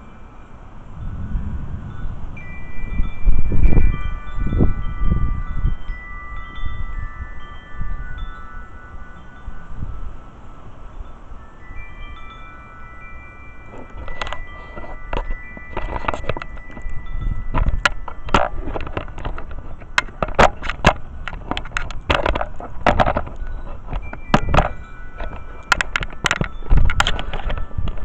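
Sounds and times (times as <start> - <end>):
wind chimes ringing: 0.0 - 28.0
low rumble: 0.7 - 5.8.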